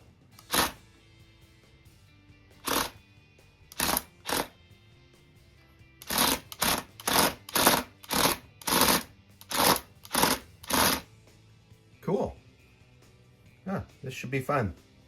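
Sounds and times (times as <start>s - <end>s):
small electric motors whirring: 0.4s - 0.8s, 2.6s - 3.0s, 3.7s - 4.5s, 6.0s - 11.0s.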